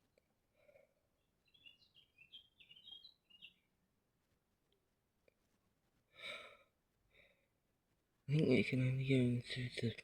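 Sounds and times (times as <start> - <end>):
small bird chirping: 1.1 - 3.8.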